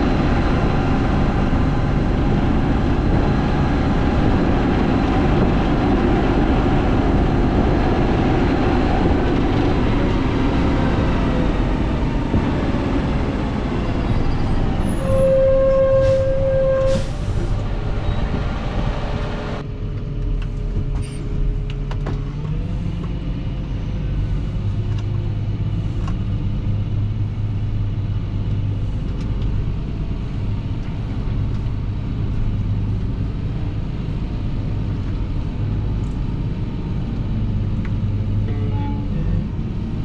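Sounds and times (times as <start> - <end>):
tractor engine running: 0.0 - 15.2.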